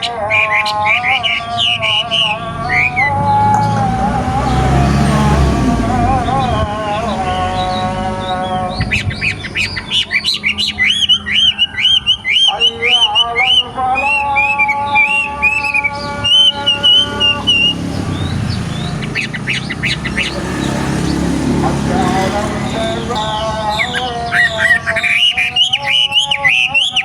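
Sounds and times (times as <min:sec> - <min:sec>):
songbird whistling: 0:00.0 - 0:04.9, 0:06.3 - 0:21.4, 0:22.2 - 0:27.0.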